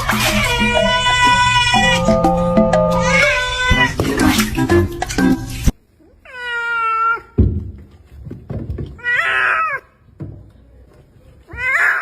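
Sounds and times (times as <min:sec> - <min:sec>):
cat meowing: 0:00.1 - 0:02.2, 0:03.0 - 0:04.0.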